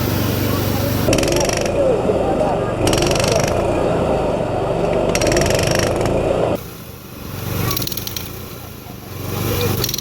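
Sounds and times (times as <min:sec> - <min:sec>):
engine drone: 0:00.0 - 0:10.0
hydraulic breaker hammering: 0:01.1 - 0:01.7.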